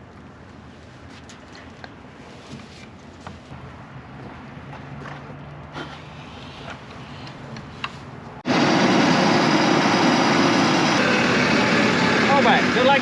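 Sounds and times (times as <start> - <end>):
engine running loudly: 8.4 - 13.0.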